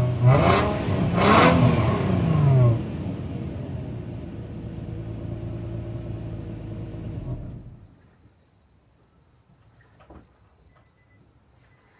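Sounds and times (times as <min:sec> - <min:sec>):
car engine idling: 0:00.0 - 0:07.9
crickets chirring: 0:00.3 - 0:11.9.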